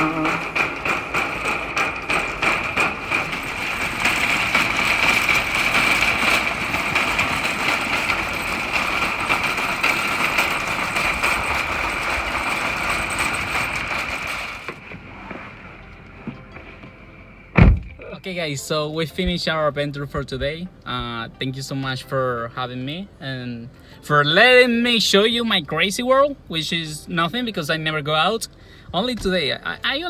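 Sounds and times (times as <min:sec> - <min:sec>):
vehicle engine and road noise: 0:00.0 - 0:18.2.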